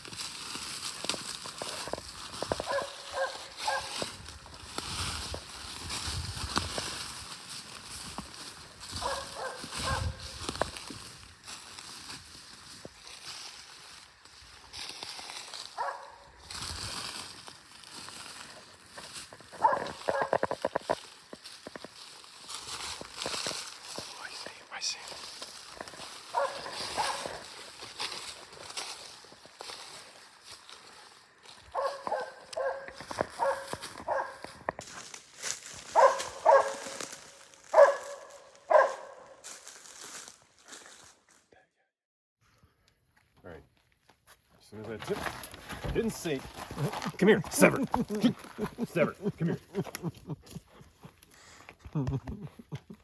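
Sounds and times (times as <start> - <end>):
dog barking: 2.6 - 4.0, 9.0 - 10.3, 15.8 - 16.3, 19.5 - 20.4, 26.3 - 27.4, 31.7 - 34.5, 35.9 - 37.0, 37.7 - 39.4.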